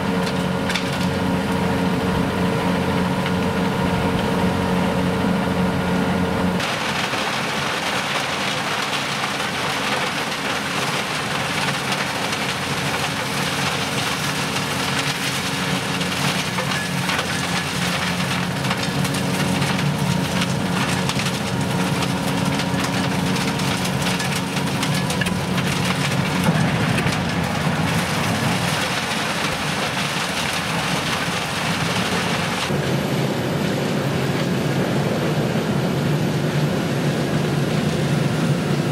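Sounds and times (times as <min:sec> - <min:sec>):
wood being chipped crackle: 0:00.0 - 0:01.6, 0:06.6 - 0:32.7
wood chipper engine running: 0:00.0 - 0:38.9.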